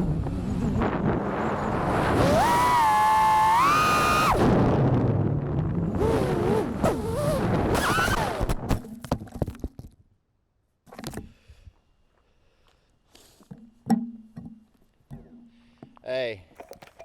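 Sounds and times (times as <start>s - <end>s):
drone motors whining: 0.0s - 4.6s, 5.9s - 8.8s.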